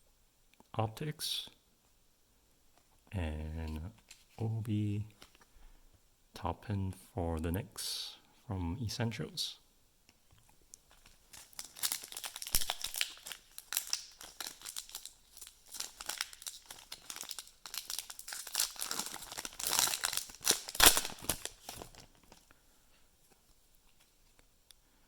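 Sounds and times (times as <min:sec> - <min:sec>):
plastic wrapper tearing and crinkling: 0:10.9 - 0:22.5.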